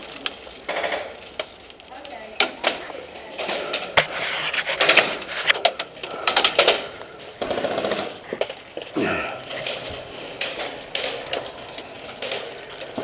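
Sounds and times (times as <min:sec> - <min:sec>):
airsoft gun firing bursts: 0:07.4 - 0:08.3.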